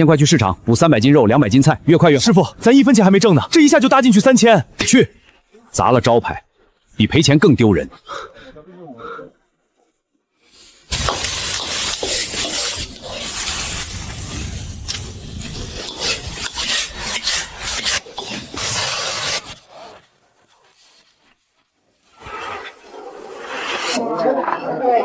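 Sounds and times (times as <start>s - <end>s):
dense rasping and scraping: 10.5s - 21.4s.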